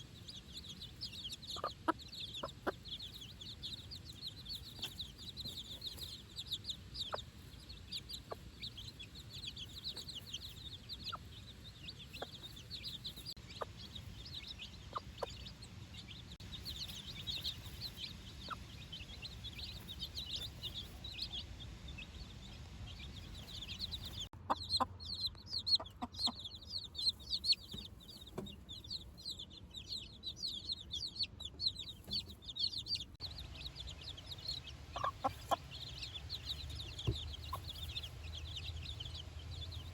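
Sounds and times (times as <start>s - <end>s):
chicks peeping: 0.0s - 39.9s
hen clucking: 0.0s - 39.9s.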